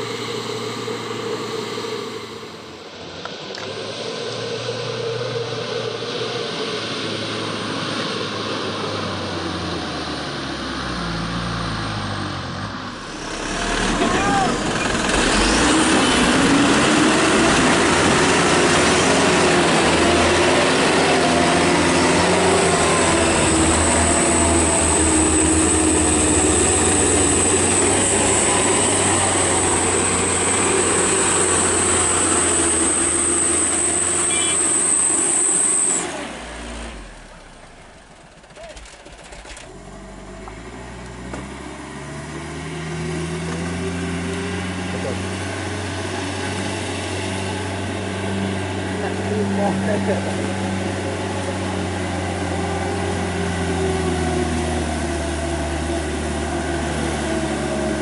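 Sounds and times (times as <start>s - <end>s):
steady high whine: 0.0s - 10.6s, 11.6s - 38.4s
diesel truck engine under load: 0.0s - 58.0s.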